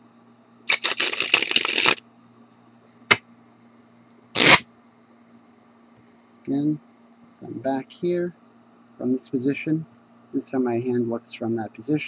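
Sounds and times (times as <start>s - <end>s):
cards rustling: 0.7s - 2.0s
playing cards flicking: 0.7s - 2.0s, 4.4s - 4.6s.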